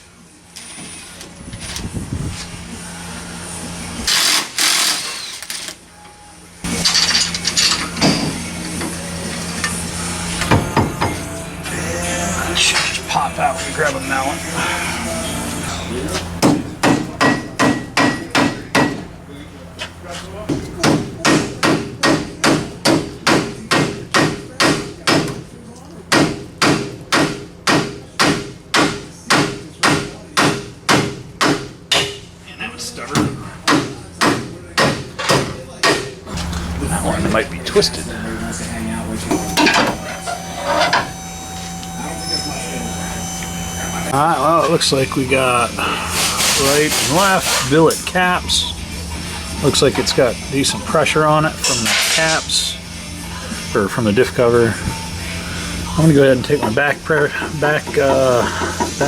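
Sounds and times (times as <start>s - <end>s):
power tool running in bursts: 4.1s - 5.8s
mallet hammering on metal part: 16.4s - 19.0s, 20.8s - 25.4s, 26.1s - 32.2s.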